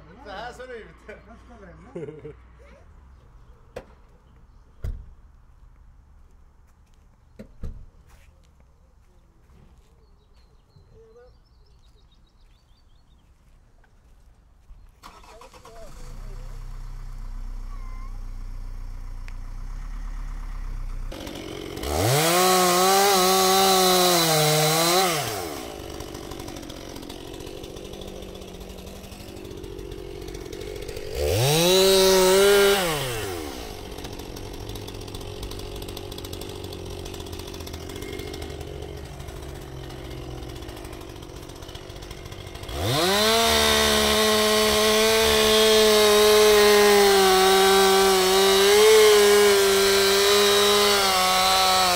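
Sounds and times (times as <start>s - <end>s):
chainsaw idling and revving: 15.0s - 51.9s.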